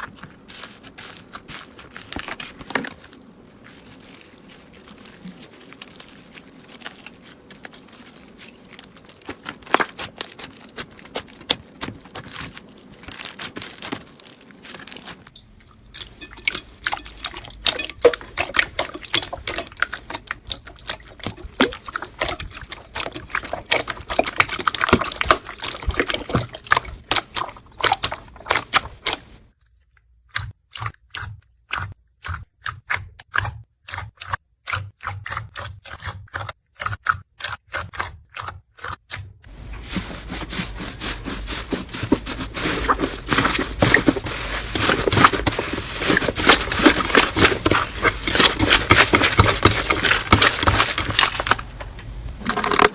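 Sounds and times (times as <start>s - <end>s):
slime crackling and popping: 0.5s - 15.3s.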